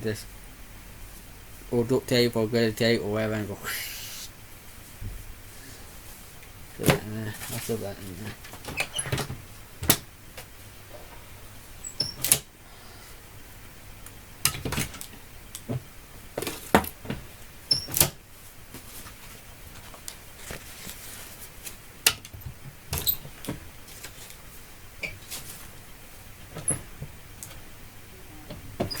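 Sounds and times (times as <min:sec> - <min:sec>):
paper rustles: 0:18.7 - 0:21.8, 0:23.8 - 0:24.6.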